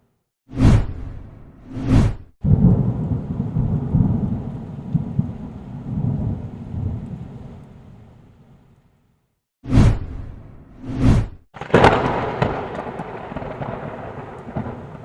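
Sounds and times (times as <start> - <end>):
thunder rumbling: 2.4 - 8.5, 11.6 - 15.0.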